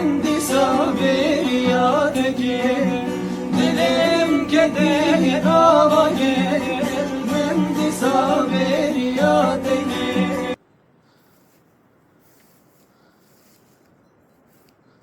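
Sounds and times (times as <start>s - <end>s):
person singing: 0.0s - 10.6s.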